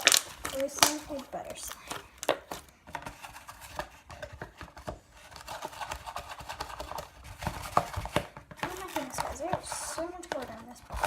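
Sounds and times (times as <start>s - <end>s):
small containers clicking and tapping: 0.0s - 11.0s.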